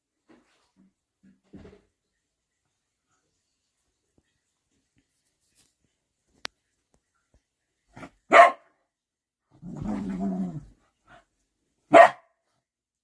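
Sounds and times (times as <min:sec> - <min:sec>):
dog barking: 0:08.0 - 0:08.8, 0:11.9 - 0:12.4
dog growling: 0:09.6 - 0:10.8.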